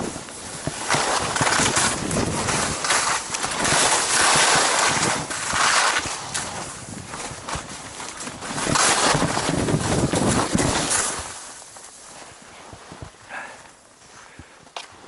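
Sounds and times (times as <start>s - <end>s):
wind buffeting microphone: 0.0s - 11.3s
strong gusting wind: 0.0s - 11.4s.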